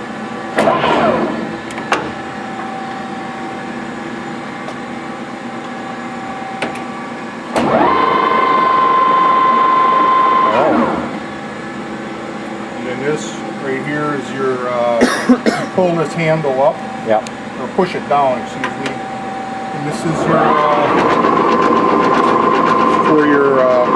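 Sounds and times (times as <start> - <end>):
lathe gear whine: 0.0 - 23.9
high-pitched whine: 7.6 - 11.6, 15.8 - 23.9.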